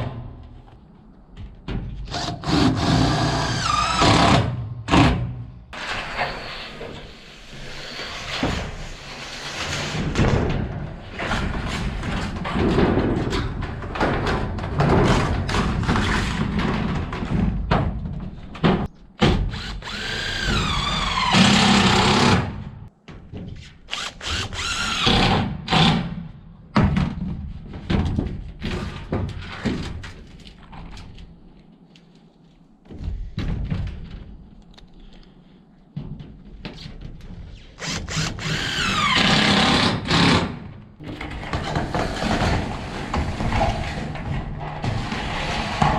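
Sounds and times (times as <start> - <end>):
power drill driving screws: 2.1 - 4.4, 19.4 - 22.4, 23.9 - 25.3, 37.8 - 40.4
knocks of metal and wood: 9.8 - 23.8, 24.4 - 30.4.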